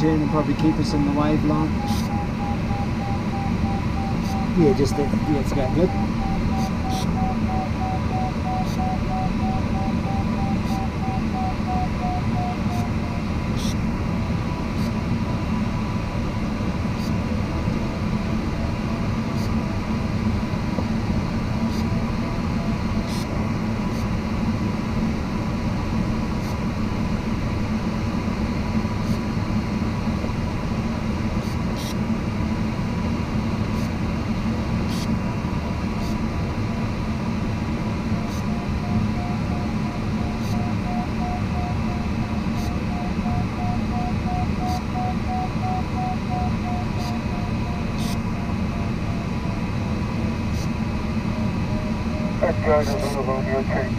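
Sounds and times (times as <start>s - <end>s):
rapid electronic beeping tone: 0.0s - 13.1s, 38.2s - 48.1s.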